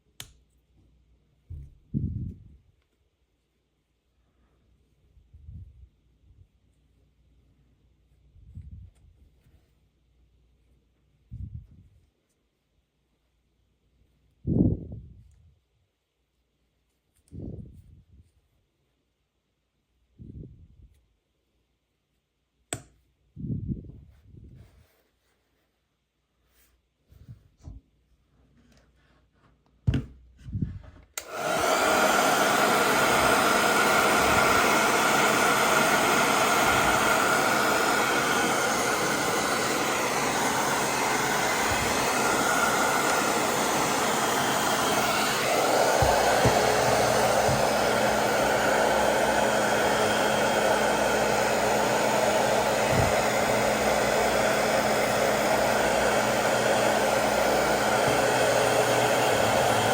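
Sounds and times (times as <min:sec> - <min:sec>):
hair dryer blowing: 0:31.2 - 0:59.9.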